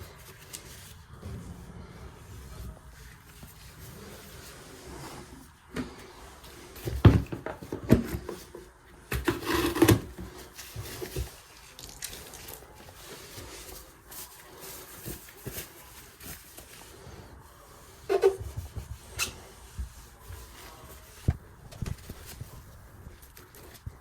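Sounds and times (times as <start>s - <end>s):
scraping rub: 0.0s - 24.0s.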